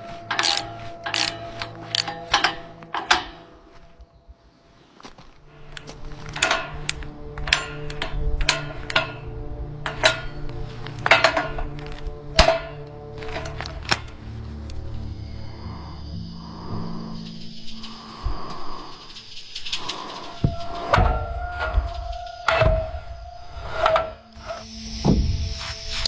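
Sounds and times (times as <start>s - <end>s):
background music: 0.0s - 26.0s
construction knocks and clatter: 5.9s - 14.2s.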